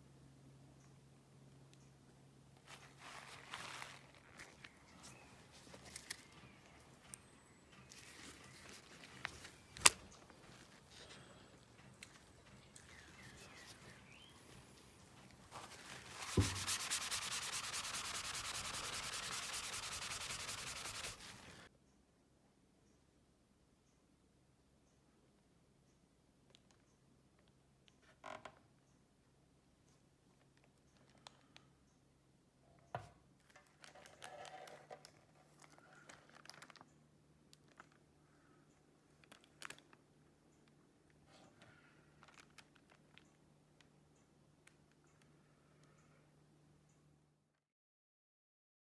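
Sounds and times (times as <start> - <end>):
rustling and crinkling: 2.6 - 21.7, 33.4 - 38.1, 39.1 - 44.0
hand sanding scratchy rubbing: 15.5 - 21.7
thump: 16.3 - 16.7.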